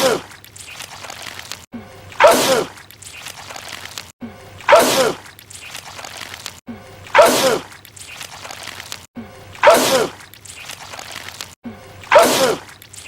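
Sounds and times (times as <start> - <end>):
man sneezing wetly: 2.2 - 2.7, 4.7 - 5.2, 7.2 - 7.7, 9.6 - 10.2, 12.1 - 12.6.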